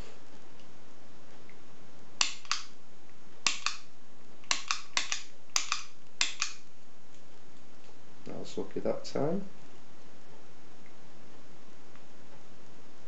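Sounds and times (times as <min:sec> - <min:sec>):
sharp metallic snaps: 0:02.2 - 0:02.8, 0:03.4 - 0:06.7.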